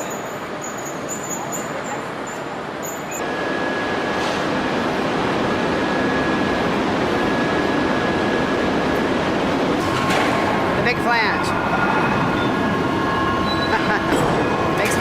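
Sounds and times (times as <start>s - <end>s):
faint high whine: 0.0s - 15.0s
heavy machinery roaring: 3.2s - 15.0s.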